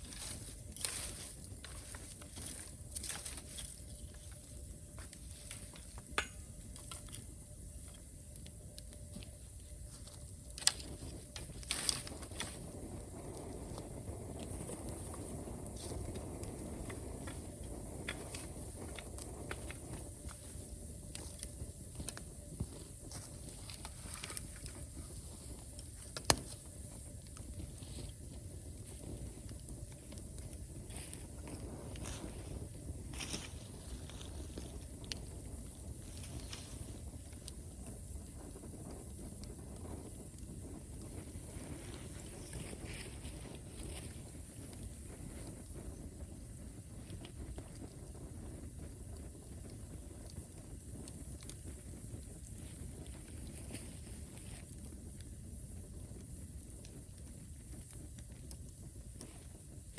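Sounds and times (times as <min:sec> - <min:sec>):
campfire crackling: 0:00.0 - 0:59.9
sharp fire pops: 0:26.0 - 0:26.9.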